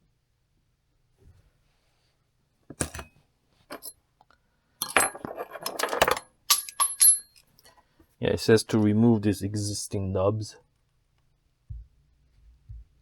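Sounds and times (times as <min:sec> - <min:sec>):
small hard parts clicking and clinking: 0:04.8 - 0:07.7.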